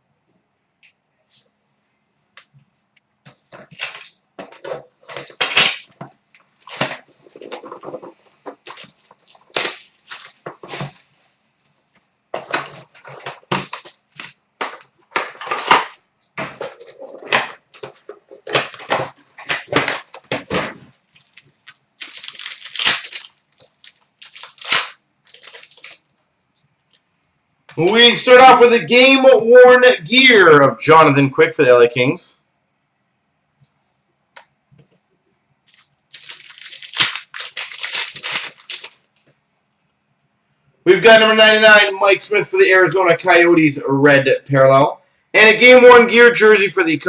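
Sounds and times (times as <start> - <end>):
foil wrappers tearing and crinkling: 6.6 - 10.9, 12.7 - 15.9, 21.2 - 26.0, 35.7 - 39.1.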